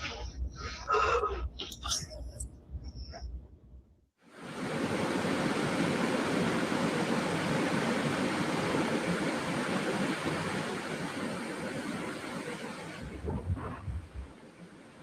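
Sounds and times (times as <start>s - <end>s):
steady rushing noise: 4.3s - 15.0s.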